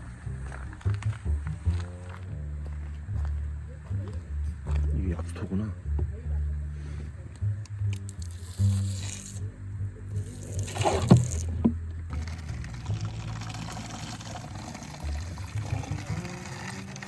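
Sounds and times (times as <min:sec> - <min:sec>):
water splashing from spring spout: 0:10.4 - 0:17.0.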